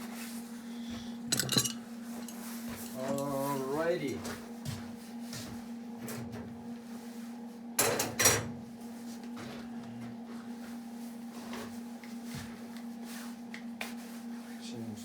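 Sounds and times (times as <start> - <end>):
steady hum: 0.0 - 12.8
metal pieces clanking: 1.3 - 1.8.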